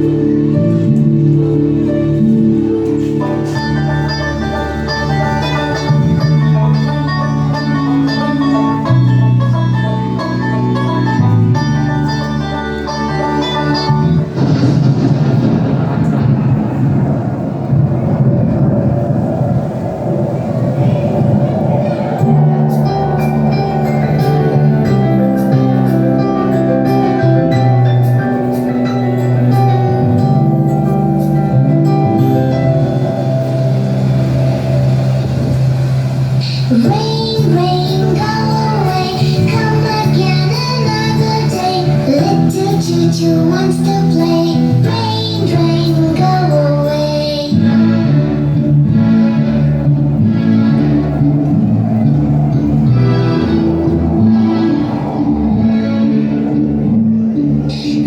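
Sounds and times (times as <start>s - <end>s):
plucked string instrumental music: 0.0s - 15.6s
instrumental music: 0.0s - 16.2s, 21.9s - 58.0s.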